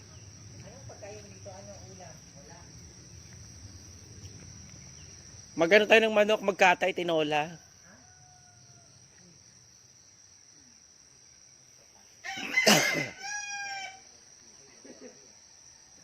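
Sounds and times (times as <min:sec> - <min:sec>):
crickets chirping: 0:00.0 - 0:16.0
rooster crowing: 0:07.5 - 0:09.0, 0:12.2 - 0:14.1.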